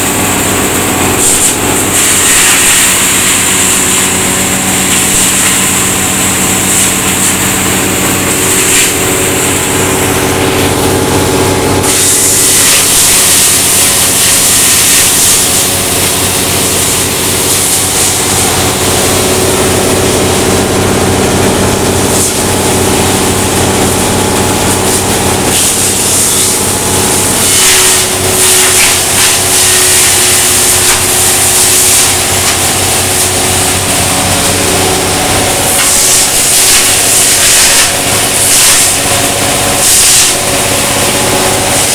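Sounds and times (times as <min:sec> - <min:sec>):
material rushing through chipper: 0:00.0 - 0:41.9
wood chipper engine drone: 0:00.0 - 0:41.9.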